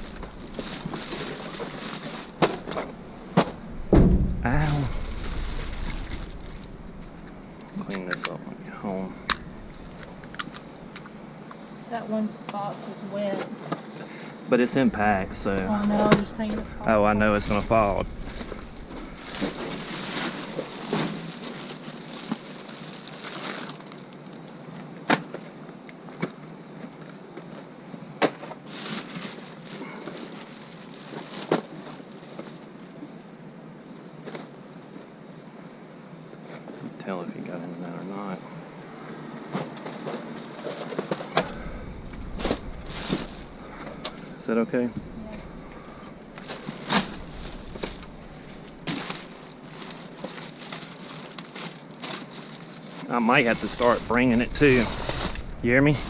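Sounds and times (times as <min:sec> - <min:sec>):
packages rustling: 0:00.0 - 0:11.3, 0:14.8 - 0:24.7, 0:28.3 - 0:32.7, 0:39.3 - 0:56.0
sharp knocks: 0:02.4 - 0:07.6
knock: 0:03.9 - 0:04.6.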